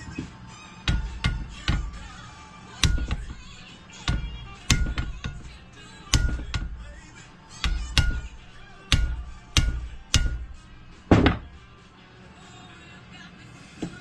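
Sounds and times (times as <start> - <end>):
hammer striking metal: 0.9 - 11.7.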